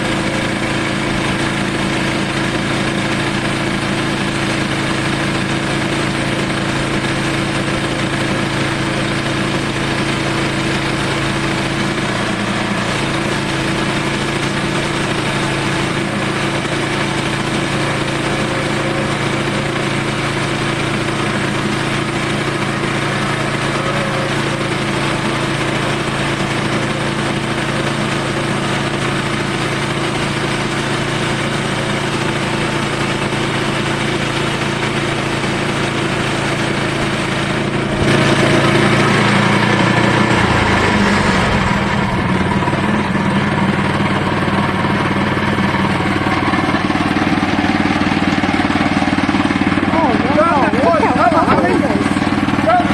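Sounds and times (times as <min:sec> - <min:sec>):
sawmill engine cutting log: 0:00.0 - 0:52.9.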